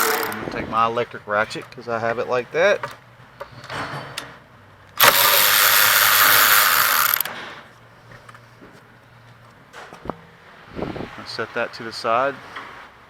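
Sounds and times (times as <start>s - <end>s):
electric ratchet spinning bolt: 0.0s - 0.4s, 5.0s - 7.3s.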